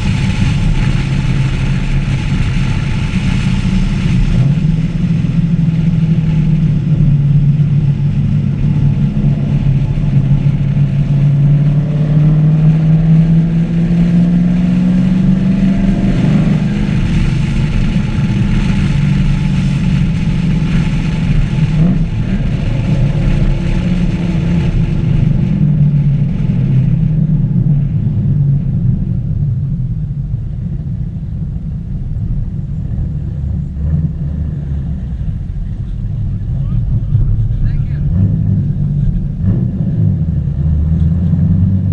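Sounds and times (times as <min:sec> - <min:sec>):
car engine revving on track: 0:00.0 - 0:41.9
road noise rushing: 0:00.0 - 0:41.9.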